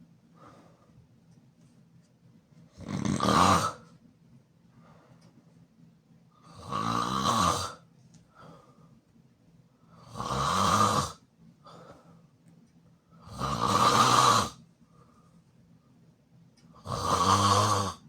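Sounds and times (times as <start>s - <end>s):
quiet breathing: 0.0s - 2.9s, 4.6s - 6.7s, 7.6s - 10.2s, 11.1s - 17.0s
person snoring loudly: 2.8s - 3.8s, 6.4s - 7.8s, 10.0s - 11.2s, 13.2s - 14.6s, 16.8s - 18.0s.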